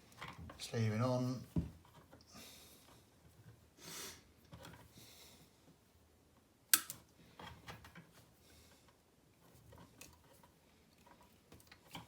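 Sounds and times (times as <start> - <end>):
handling of cable conductors: 6.8 - 12.0.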